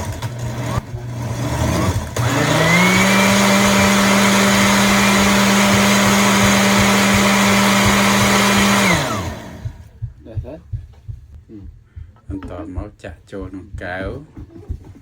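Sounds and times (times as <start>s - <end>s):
blender motor running: 0.0s - 9.9s.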